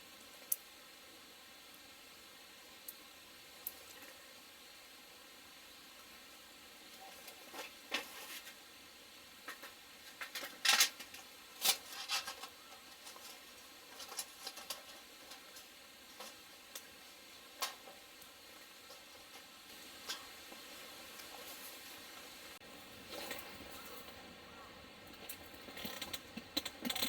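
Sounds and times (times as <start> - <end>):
rustles of handling: 6.9 - 8.7, 9.5 - 24.3.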